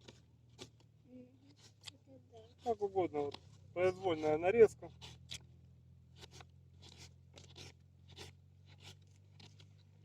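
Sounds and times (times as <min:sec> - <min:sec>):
knife cutting vegetables on board: 0:06.1 - 0:09.7.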